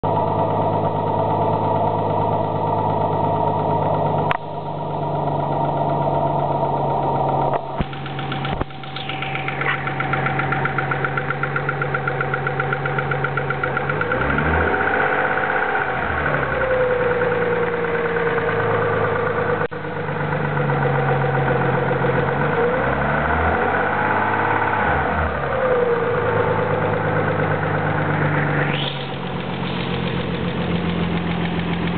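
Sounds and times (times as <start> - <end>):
car engine idling and revving: 0.0 - 31.9
engine lifter tick: 4.2 - 4.6, 7.2 - 15.6, 28.7 - 31.9.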